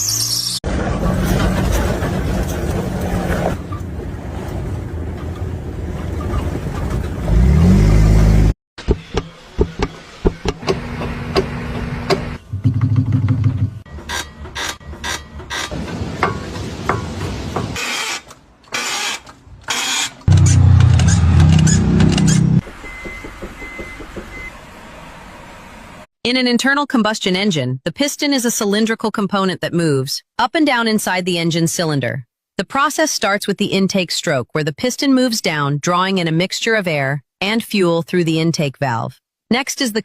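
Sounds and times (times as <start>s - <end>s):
car engine revving: 7.2s - 12.4s, 20.3s - 22.6s
mechanical knocks and clunks: 8.8s - 18.4s, 20.2s - 24.5s.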